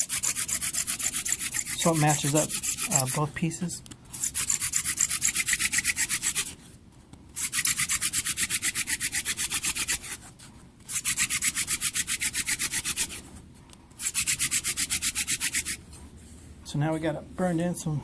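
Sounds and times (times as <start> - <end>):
wooden spindle rubbing on wood: 0.0 - 3.4, 4.2 - 6.6, 7.4 - 10.3, 10.9 - 13.4, 14.0 - 15.8.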